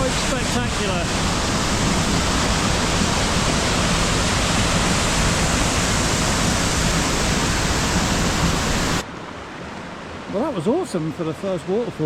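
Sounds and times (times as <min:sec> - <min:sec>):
waterfall rushing: 0:00.0 - 0:09.0.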